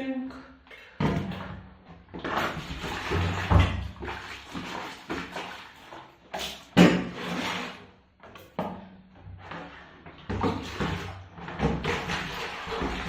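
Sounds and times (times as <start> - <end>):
kitchen items knocking and clattering: 6.4 - 7.6.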